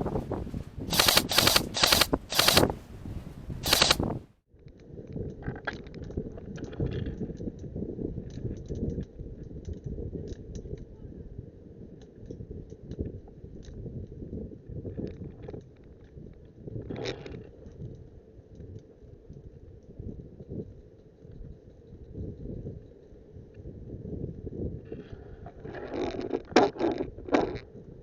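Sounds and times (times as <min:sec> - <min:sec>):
wind rumble: 0:00.0 - 0:04.3
faint clicks: 0:00.9 - 0:02.8, 0:03.6 - 0:04.2
airsoft gun bursts: 0:00.9 - 0:02.9, 0:03.5 - 0:04.2.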